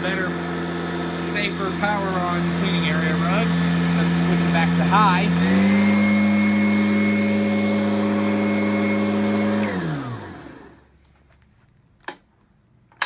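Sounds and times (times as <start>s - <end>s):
vacuum motor whining: 0.0s - 10.9s
vacuum motor winding down: 0.0s - 10.9s.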